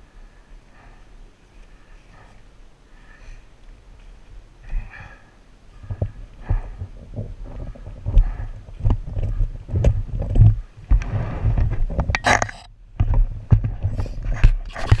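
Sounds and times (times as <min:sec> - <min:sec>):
wind buffeting microphone: 0:04.3 - 0:12.3.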